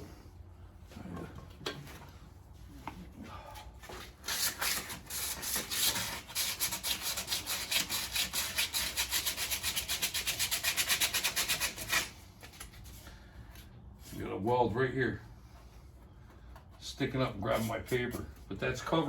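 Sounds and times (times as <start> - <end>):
sandpaper rubbing on metal: 4.2 - 12.2.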